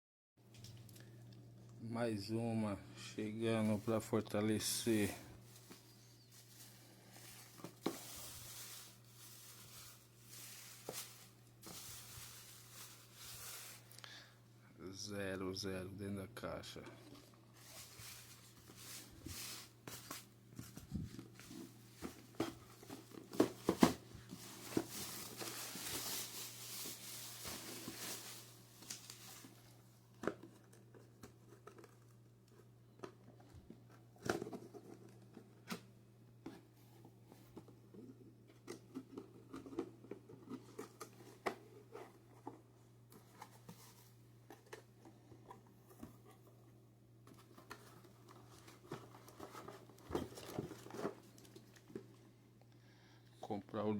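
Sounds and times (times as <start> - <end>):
plastic packaging rustling: 3.6 - 14.0, 17.0 - 32.5, 47.2 - 52.2.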